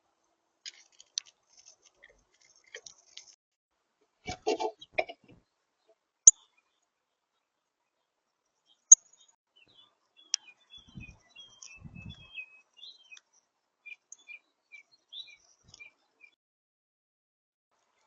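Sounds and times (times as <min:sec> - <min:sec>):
small birds chirping: 0:04.6 - 0:16.4.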